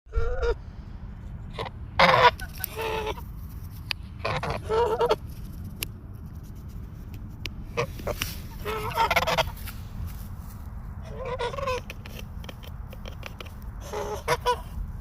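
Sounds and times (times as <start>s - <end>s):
goose honking: 1.5s - 3.3s, 4.1s - 5.3s, 7.7s - 9.6s, 11.0s - 14.8s.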